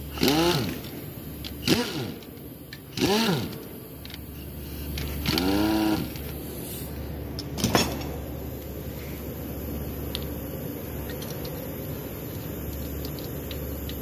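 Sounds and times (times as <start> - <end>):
power tool whirring: 0.1 - 0.9, 1.5 - 4.2, 4.8 - 6.4.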